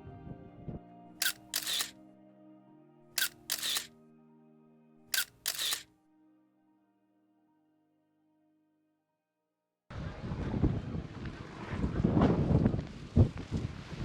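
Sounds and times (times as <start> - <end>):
camera shutter double click: 1.2 - 1.9, 3.2 - 3.9, 5.2 - 5.8.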